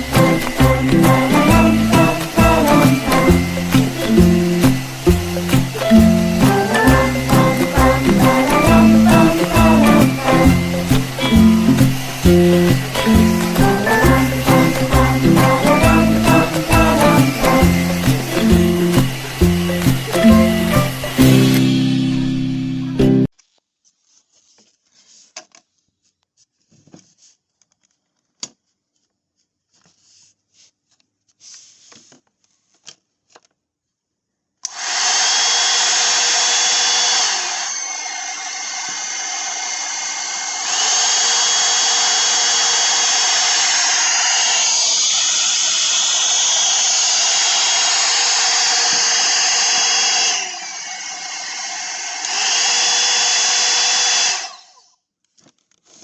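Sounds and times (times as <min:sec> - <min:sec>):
hot air brush motor and fan: 0:00.0 - 0:23.0, 0:34.6 - 0:54.9.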